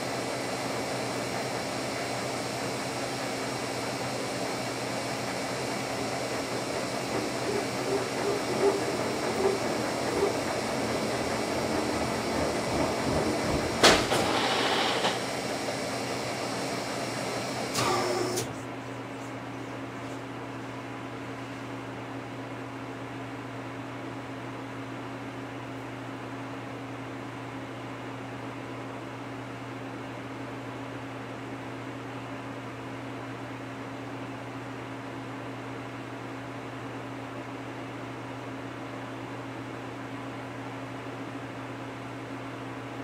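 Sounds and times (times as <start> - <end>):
boring mill humming: 0.0 - 20.2.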